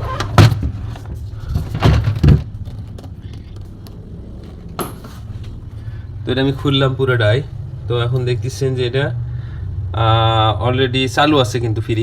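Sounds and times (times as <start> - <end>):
plastic panels clattering: 0.0 - 3.7
low hum: 2.4 - 10.6.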